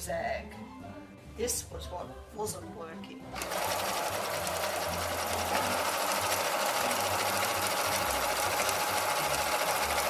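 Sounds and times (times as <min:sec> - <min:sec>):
sewing machine running: 0:03.4 - 0:10.0.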